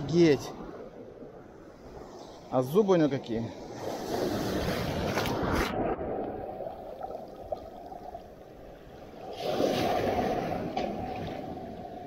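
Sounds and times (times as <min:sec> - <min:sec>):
sea surf washing onto beach: 0:09.3 - 0:12.0.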